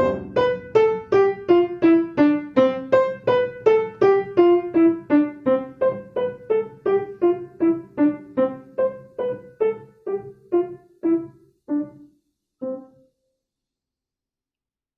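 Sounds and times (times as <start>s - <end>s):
piano playing single notes: 0.0s - 1.6s.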